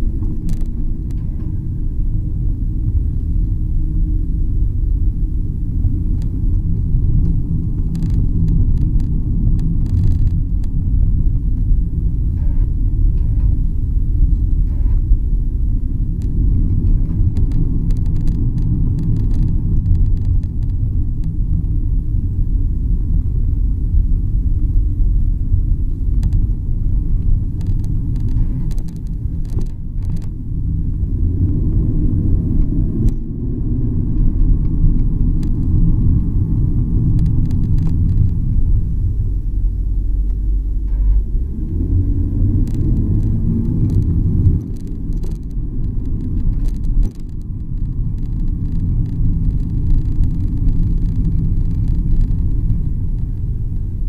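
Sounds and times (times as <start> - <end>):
road and tyre rumble: 0.0 - 54.0
short creaking clicks: 0.2 - 1.6, 6.2 - 10.8, 14.4 - 15.2, 16.2 - 21.8, 26.1 - 31.6, 34.2 - 38.5, 42.4 - 54.0.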